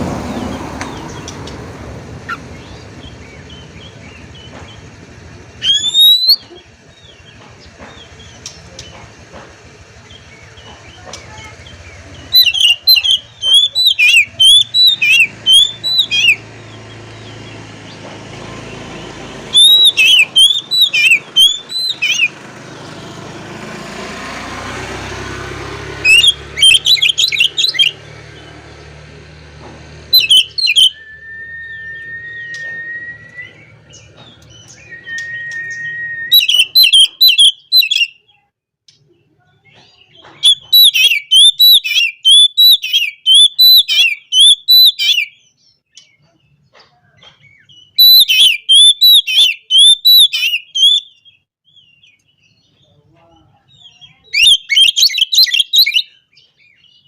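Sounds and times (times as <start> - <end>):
bird chirping and chattering: 0.0 - 22.5, 25.8 - 31.1, 31.8 - 57.0
bird whistle: 5.6 - 6.6, 12.2 - 16.4, 19.5 - 22.3, 26.0 - 28.0, 30.1 - 38.2, 40.4 - 45.4, 47.6 - 51.4, 54.2 - 56.2.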